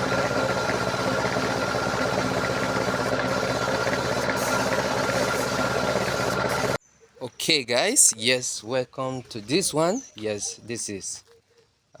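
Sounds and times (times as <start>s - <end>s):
motor humming: 0.0s - 6.8s.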